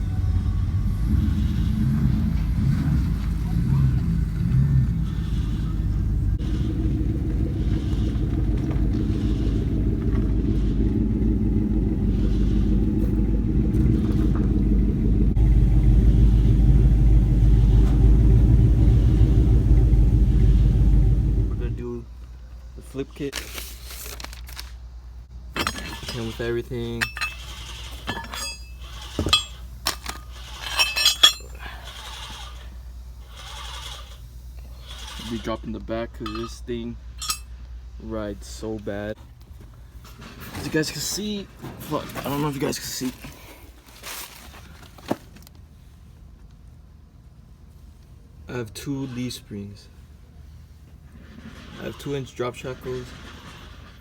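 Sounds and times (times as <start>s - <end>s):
vehicle engine rumbling: 0.0s - 54.0s
metal hardware clinking: 25.5s - 32.7s, 36.2s - 37.6s.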